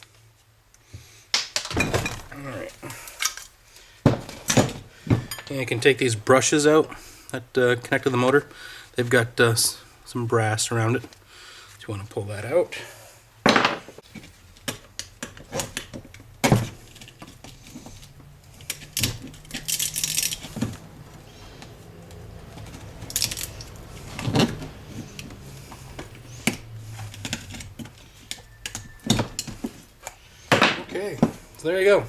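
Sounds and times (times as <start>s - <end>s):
metal parts clicking and clinking: 17.9s - 20.8s, 22.5s - 25.3s.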